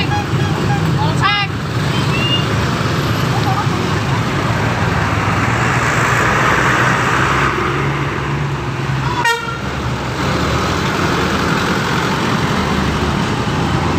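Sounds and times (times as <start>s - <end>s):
bus horns honking: 0.0s - 3.7s, 8.9s - 10.0s
bus engines running: 0.0s - 13.9s
short sharp horn toot: 9.1s - 9.6s.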